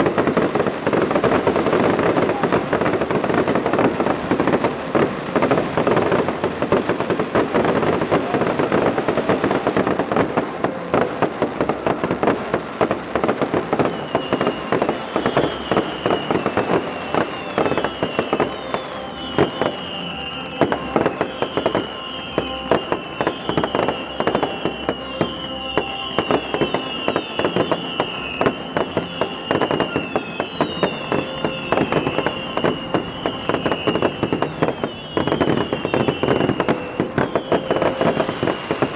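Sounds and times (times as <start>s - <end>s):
fireworks bangs and crackling: 0.0s - 38.9s
high wavering whistle: 13.9s - 38.9s.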